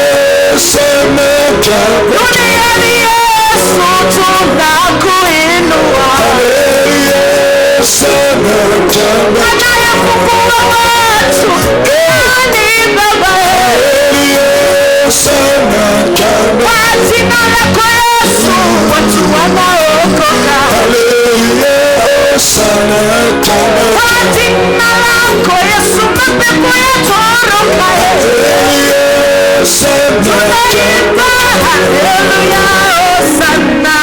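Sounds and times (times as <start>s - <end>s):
instrumental accompaniment: 0.0s - 34.0s
person singing gospel song: 0.0s - 34.0s.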